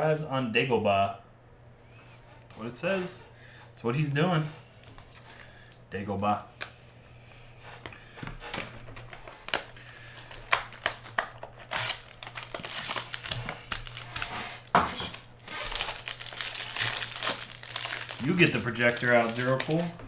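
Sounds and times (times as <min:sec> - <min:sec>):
card packaging crinkling: 0:04.7 - 0:06.8, 0:08.4 - 0:20.0.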